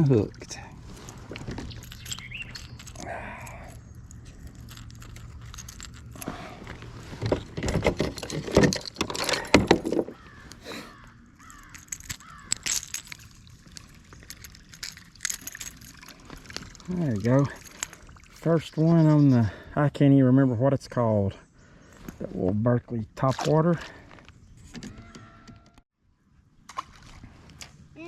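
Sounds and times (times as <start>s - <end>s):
fishing lure rattling and knocking: 1.3s - 6.3s, 11.4s - 16.9s.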